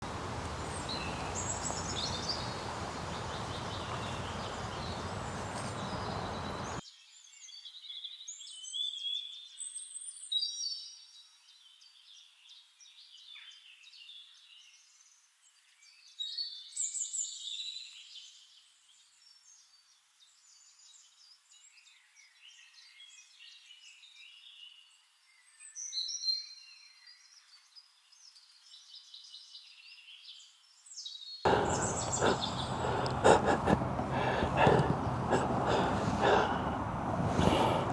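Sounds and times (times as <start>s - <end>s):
birds chirping and singing: 0.0s - 6.8s, 31.5s - 37.9s.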